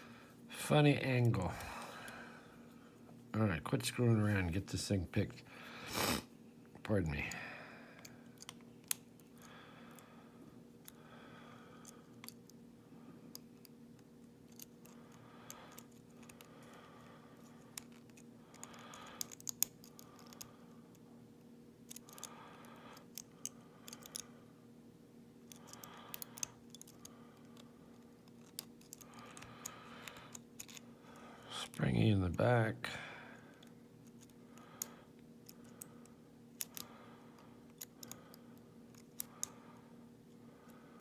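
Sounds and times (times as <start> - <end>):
lock pick clicking and scratching: 13.3 - 16.7, 17.4 - 21.0, 21.8 - 24.3, 25.4 - 30.9, 34.0 - 36.0, 36.6 - 36.9, 37.6 - 39.6.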